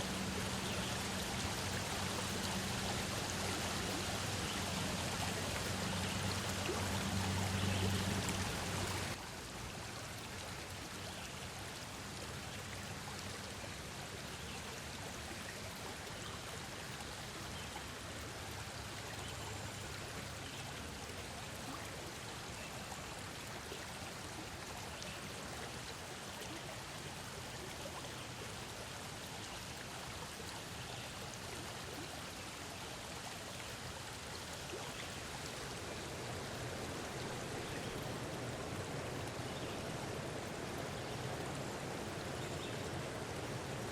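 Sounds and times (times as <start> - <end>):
river water flowing: 0.0 - 43.9.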